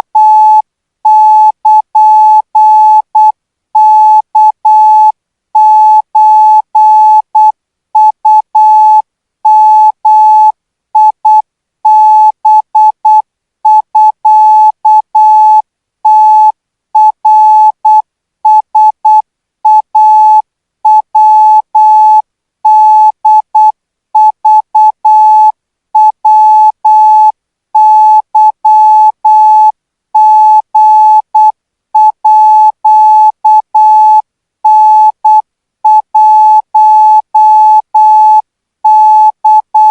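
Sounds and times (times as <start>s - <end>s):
morse code beeps: 0.2s - 39.9s.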